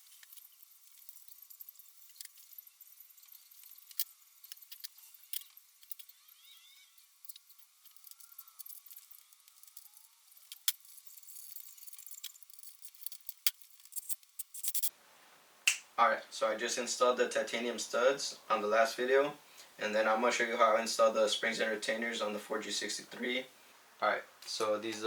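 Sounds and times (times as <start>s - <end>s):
small parts clicking and clinking: 0.0s - 14.9s
faint hiss: 14.8s - 25.0s.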